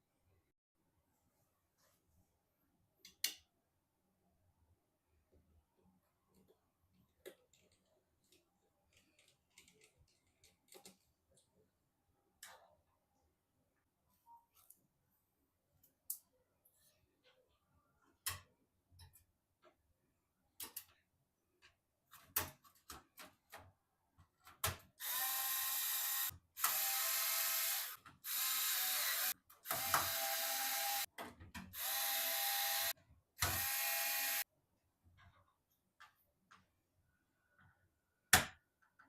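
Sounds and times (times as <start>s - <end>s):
electric screwdriver driving screws: 25.0s - 31.1s, 31.8s - 34.4s.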